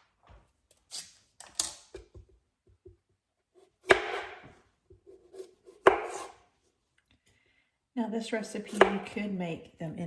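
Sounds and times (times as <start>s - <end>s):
knife chopping on cutting board: 3.6s - 6.4s, 8.7s - 9.2s.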